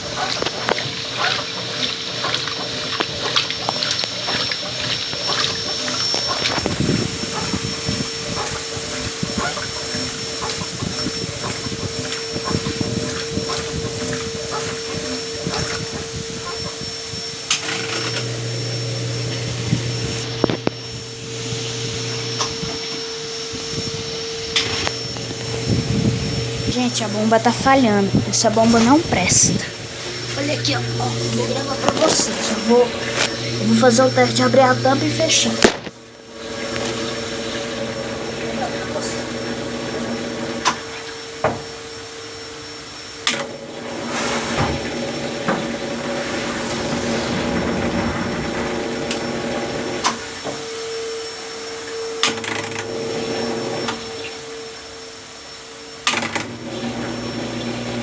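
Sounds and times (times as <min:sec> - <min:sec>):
washing machine drain pump humming: 0:00.0 - 0:58.0
machine noise rush: 0:19.4 - 0:39.2.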